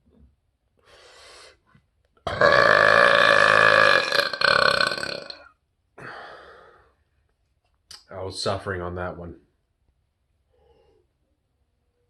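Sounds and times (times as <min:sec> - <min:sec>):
man burping loudly: 0:02.2 - 0:06.1
faint breathy sound: 0:06.0 - 0:07.1, 0:10.4 - 0:12.0.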